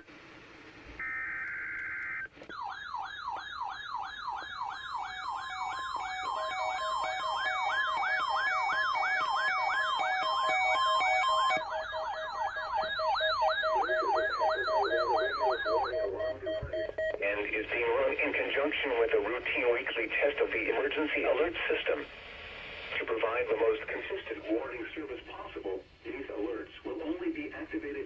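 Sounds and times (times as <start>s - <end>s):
warbling siren alarm: 1.0s - 17.3s
pulsed beeping: 5.0s - 17.4s
data header tones: 5.4s - 18.4s
faint broadcast voice: 13.8s - 22.1s, 22.9s - 28.0s.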